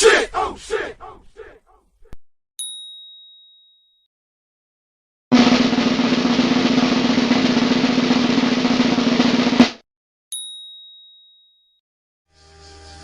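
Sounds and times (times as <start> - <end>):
bright ding: 2.6 - 3.9, 10.3 - 11.8
snare drum roll: 5.3 - 9.8.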